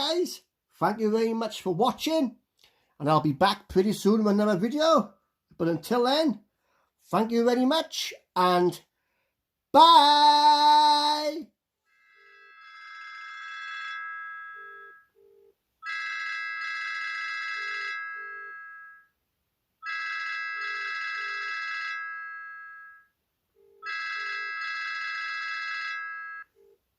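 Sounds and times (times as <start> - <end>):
telephone ringtone trilling: 11.9 - 19.2, 19.8 - 26.8.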